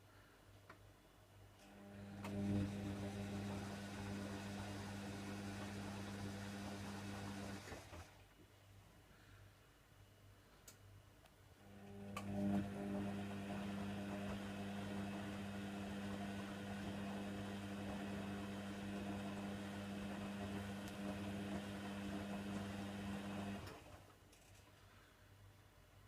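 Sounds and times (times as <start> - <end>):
washing machine motor hum: 1.7 - 8.2, 11.6 - 24.1
click: 10.6 - 12.3.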